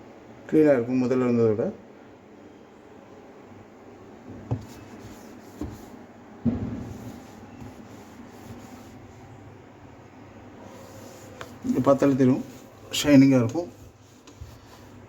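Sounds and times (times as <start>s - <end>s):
cloth wiping dishwasher part: 4.4s - 9.2s, 10.6s - 15.0s.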